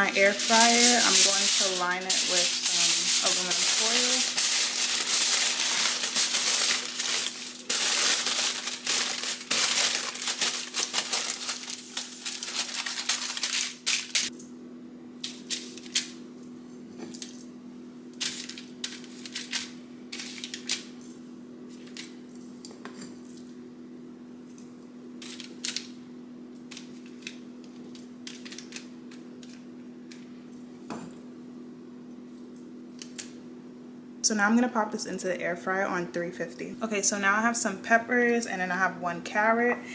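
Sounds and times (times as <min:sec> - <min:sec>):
aluminum foil crinkling: 0:00.0 - 0:14.3, 0:15.2 - 0:16.2, 0:18.2 - 0:21.1, 0:21.8 - 0:22.2, 0:25.2 - 0:25.9, 0:26.7 - 0:30.2
steady low hum: 0:00.0 - 0:39.9.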